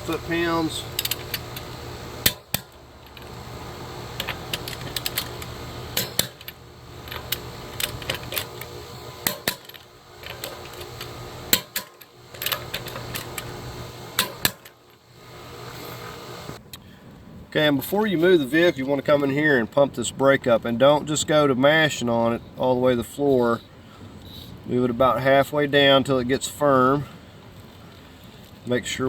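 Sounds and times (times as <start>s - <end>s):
torque wrench clicking: 0.0s - 15.0s.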